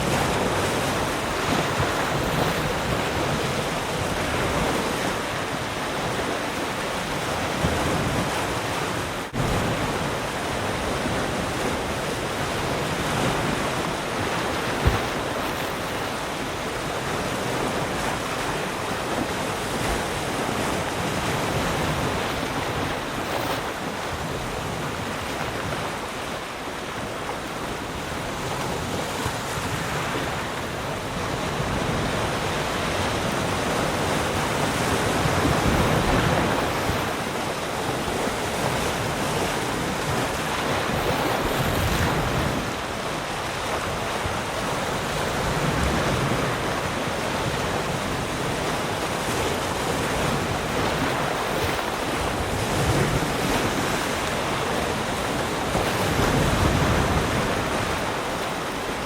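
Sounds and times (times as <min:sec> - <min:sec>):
ocean waves breaking on shore: 0:00.0 - 0:59.0.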